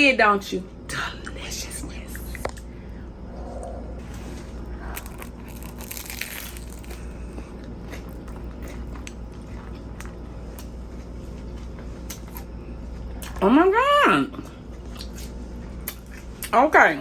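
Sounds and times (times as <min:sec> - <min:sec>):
low steady hum: 0:00.0 - 0:17.0
person chewing crunchy sandwich: 0:03.4 - 0:13.4, 0:14.5 - 0:16.5.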